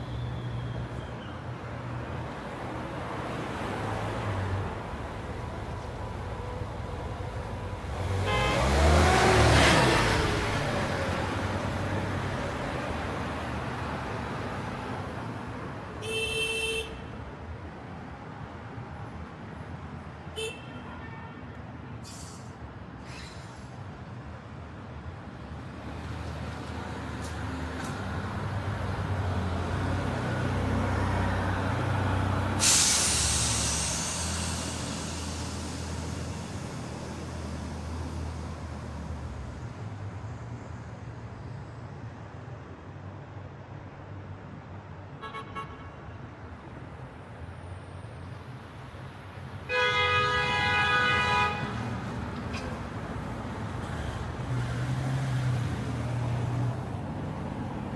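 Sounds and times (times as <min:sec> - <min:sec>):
light traffic: 0:00.0 - 0:57.9
car passing by: 0:02.1 - 0:15.5, 0:25.9 - 0:40.8, 0:49.7 - 0:57.9
air brake hiss: 0:22.0 - 0:23.9, 0:32.3 - 0:39.8
heavy vehicle engine running: 0:27.1 - 0:40.7.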